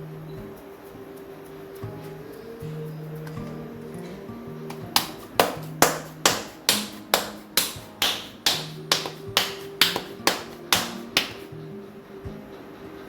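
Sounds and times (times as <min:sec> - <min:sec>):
light music: 0:00.0 - 0:13.0
hands patting dough: 0:04.7 - 0:11.5.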